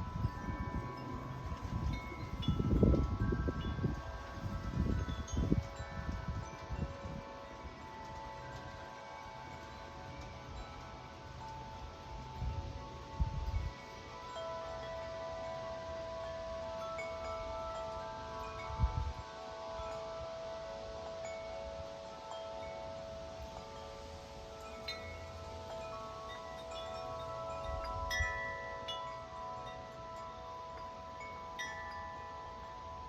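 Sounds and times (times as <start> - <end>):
wind thumping on microphone: 0.0 - 8.3, 18.5 - 19.2
gusty wind: 0.0 - 33.0
tubular wind chime ringing: 0.0 - 33.0.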